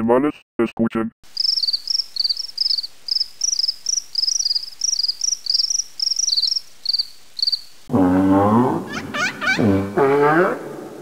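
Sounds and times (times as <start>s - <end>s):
crickets chirping: 1.2s - 7.9s
deep drawn-out animal call: 7.9s - 11.0s.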